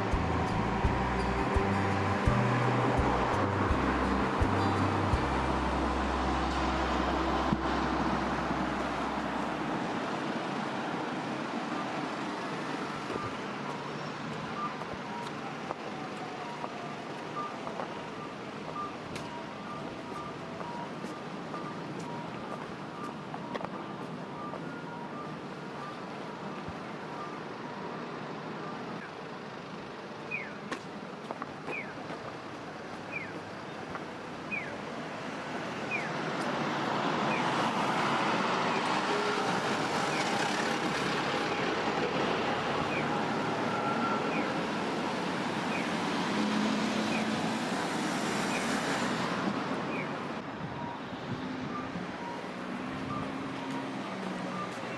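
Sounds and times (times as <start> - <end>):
vehicle passing close: 0.0 - 12.8
street traffic: 0.0 - 54.9
crossing signal chirps: 30.2 - 30.7.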